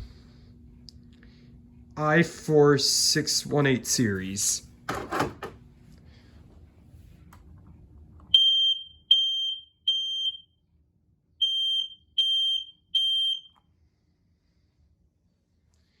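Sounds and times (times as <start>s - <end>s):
smoke alarm high beeps: 8.3s - 10.6s, 11.4s - 13.6s.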